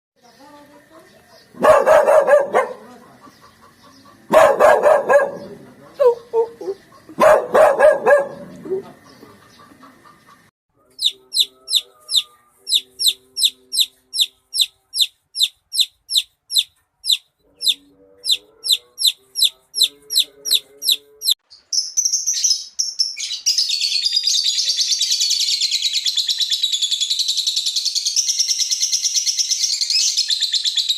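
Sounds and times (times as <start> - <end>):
chorus of birds chirping: 0.2 - 30.9
bird sharp high chirp: 10.9 - 30.9
faint lower bird calls: 11.0 - 21.4.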